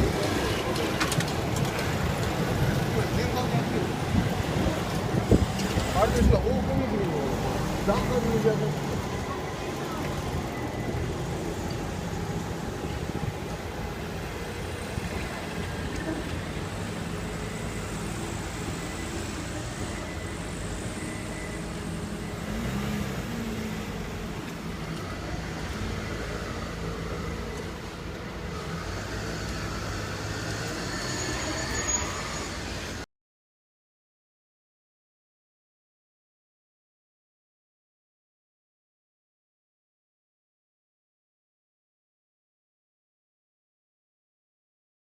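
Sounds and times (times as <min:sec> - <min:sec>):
road traffic passing: 0:00.0 - 0:33.1.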